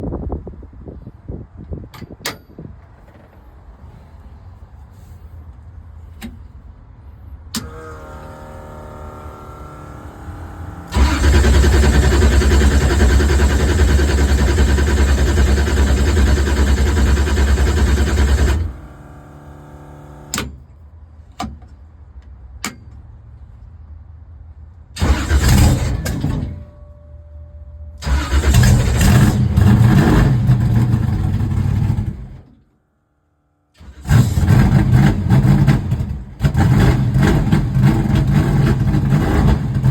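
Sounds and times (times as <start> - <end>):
starter motor cranking: 7.6 - 19.0
race car engine revving: 7.6 - 20.4, 28.0 - 32.3, 33.8 - 39.9.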